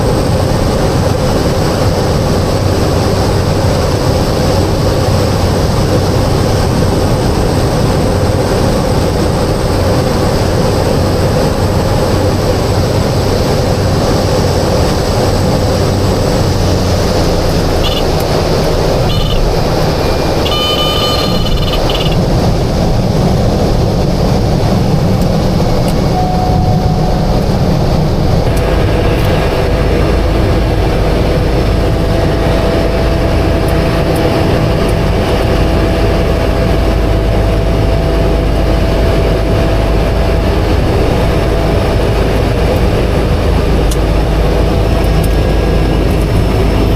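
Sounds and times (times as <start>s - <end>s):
turboprop engine and propeller: 0.0s - 46.9s
long high tone: 19.0s - 22.2s, 26.0s - 34.1s
short high beeps: 19.1s - 22.2s, 26.1s - 27.5s.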